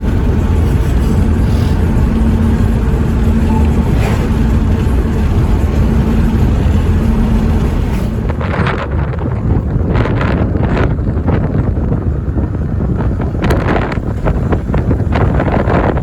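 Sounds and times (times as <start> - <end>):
faint steady hum: 0.0 - 9.4
engine rumbling: 0.0 - 16.0.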